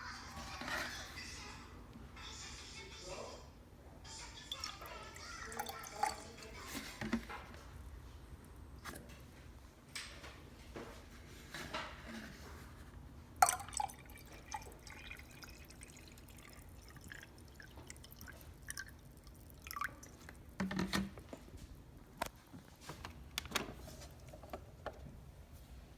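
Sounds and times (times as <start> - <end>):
liquid dripping: 4.5 - 7.4, 13.4 - 20.6.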